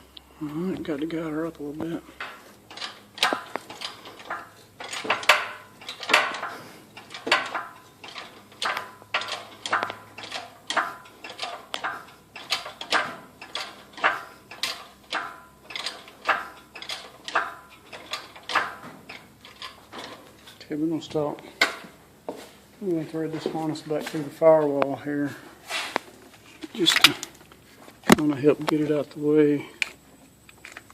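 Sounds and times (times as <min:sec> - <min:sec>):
hoist chain and steel clanking: 0:00.5 - 0:22.0, 0:26.6 - 0:29.0.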